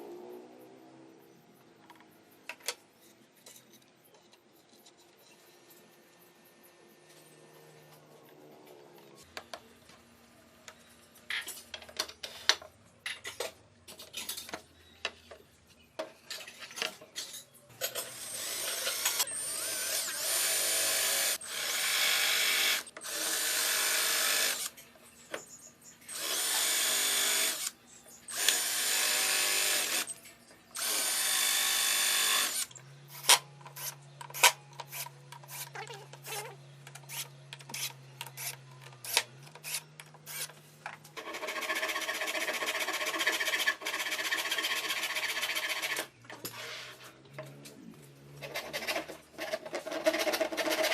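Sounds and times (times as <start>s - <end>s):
power tool running: 17.9s - 24.7s, 26.1s - 30.1s, 30.8s - 33.9s.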